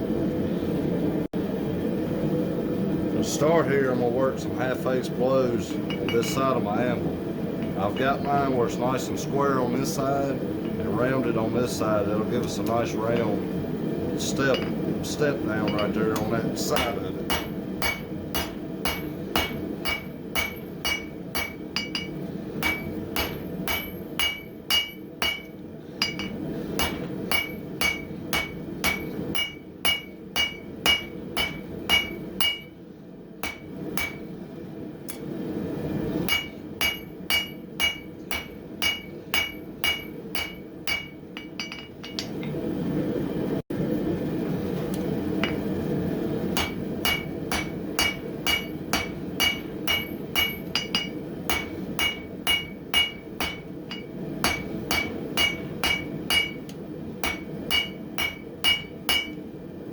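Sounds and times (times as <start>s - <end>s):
hammer striking steel on anvil: 5.8s - 6.4s, 14.4s - 14.9s, 15.6s - 32.8s, 33.4s - 34.3s, 36.3s - 42.5s, 45.4s - 45.7s, 46.5s - 59.4s.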